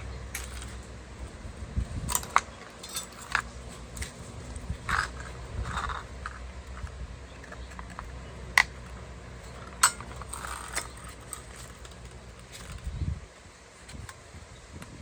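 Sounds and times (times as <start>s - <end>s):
steady low hum: 0.0s - 15.0s
clicks of parts and hand tools: 2.1s - 4.2s, 4.9s - 12.9s.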